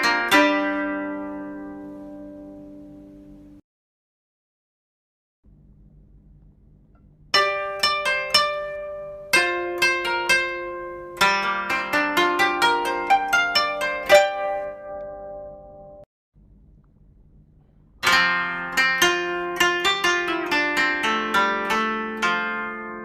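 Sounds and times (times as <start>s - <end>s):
plucked-string melody: 0.0s - 3.6s, 7.3s - 16.0s, 18.0s - 23.0s.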